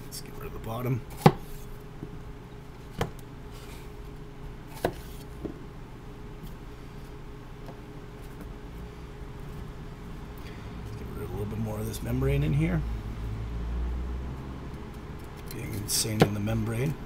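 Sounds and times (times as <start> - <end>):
low hum: 5.3 - 15.9.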